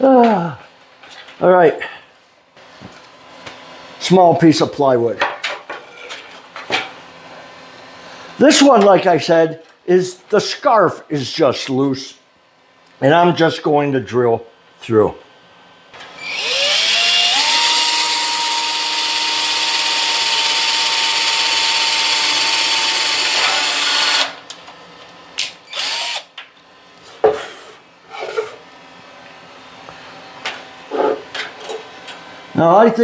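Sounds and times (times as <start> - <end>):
electric drill whining: 16.0 - 24.4, 25.5 - 26.3.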